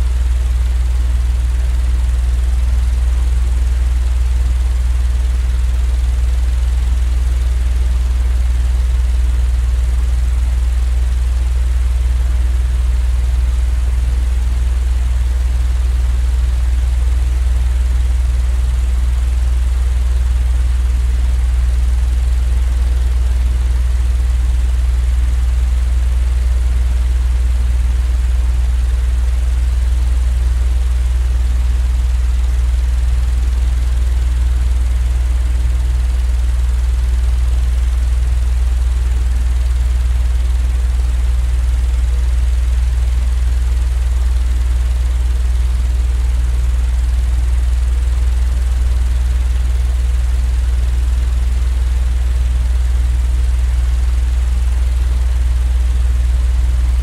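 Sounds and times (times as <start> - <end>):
deep rumbling drone: 48.0 - 49.2.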